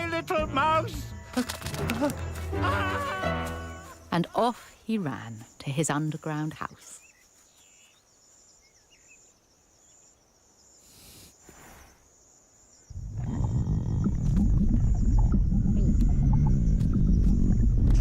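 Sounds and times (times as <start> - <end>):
faint pulsing insect chirr: 3.5 - 17.9
faint bird chirps: 6.4 - 14.2
low rumbling animal sound: 12.9 - 18.0.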